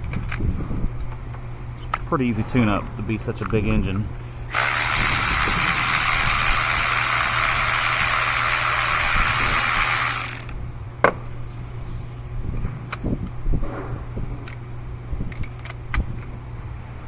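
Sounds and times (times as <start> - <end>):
cordless ratchet whirring: 4.5 - 10.6.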